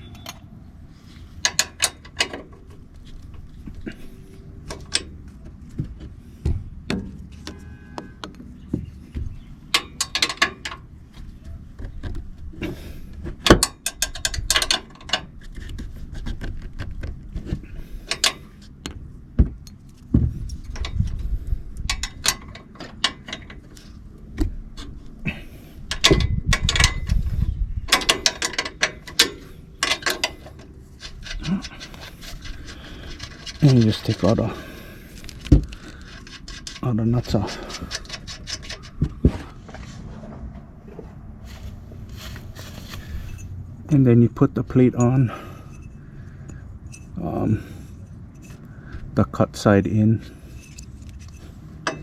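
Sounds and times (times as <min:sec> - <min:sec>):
hand wrench clicking: 0:01.4 - 0:02.4, 0:13.4 - 0:15.3, 0:18.0 - 0:19.0, 0:21.8 - 0:23.8, 0:25.9 - 0:27.2, 0:27.9 - 0:39.0.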